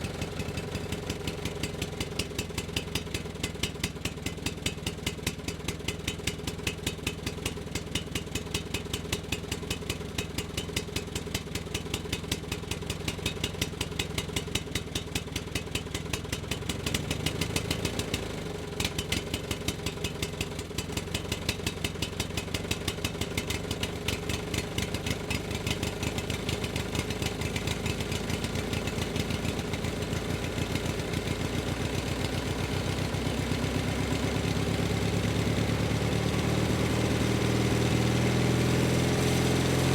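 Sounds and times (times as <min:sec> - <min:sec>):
motor idling: 0:00.0 - 0:03.5, 0:19.6 - 0:37.9.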